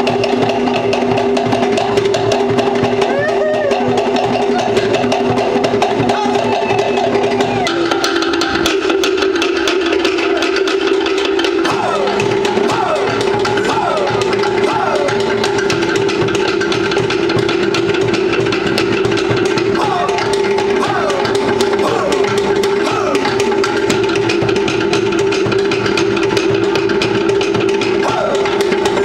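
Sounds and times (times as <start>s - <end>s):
drum ensemble playing: 0.0s - 29.0s
voices shouting: 2.8s - 8.8s, 11.6s - 15.7s, 19.6s - 24.2s, 27.8s - 29.0s.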